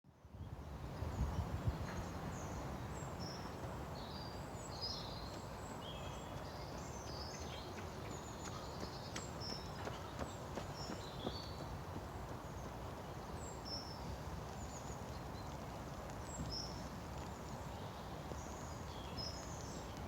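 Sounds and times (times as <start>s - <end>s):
birds chirping: 1.9s - 20.0s.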